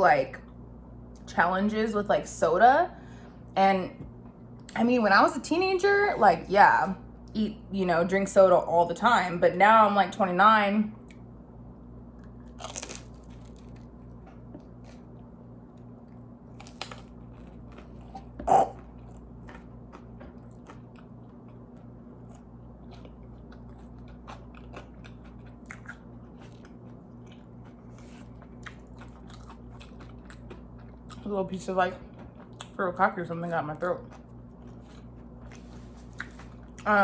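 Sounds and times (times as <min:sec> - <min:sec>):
chewing and biting pizza: 0:12.2 - 0:31.4, 0:32.0 - 0:32.8, 0:34.0 - 0:36.9.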